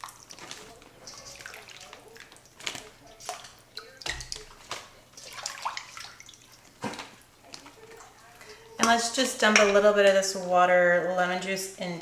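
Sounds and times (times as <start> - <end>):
water splashing and sloshing: 0.0 - 10.1.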